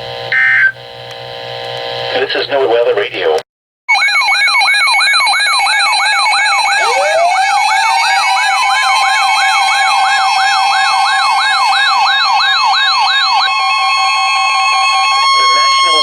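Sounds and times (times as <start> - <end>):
electronic siren sweeping: 3.9 - 16.0
high warble: 3.9 - 16.0
pulsing beeps: 3.9 - 16.0
steady alarm tone: 3.9 - 16.0.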